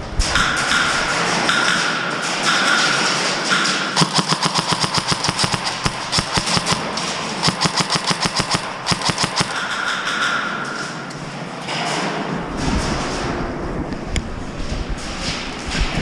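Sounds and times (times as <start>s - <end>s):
airsoft gun firing bursts: 2.4s - 10.0s.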